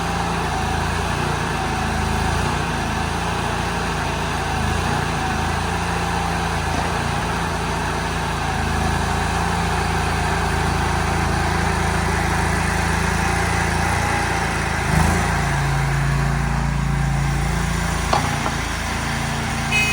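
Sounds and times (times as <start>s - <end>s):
small gasoline engine running: 0.0s - 19.9s
short knock: 18.1s - 18.8s.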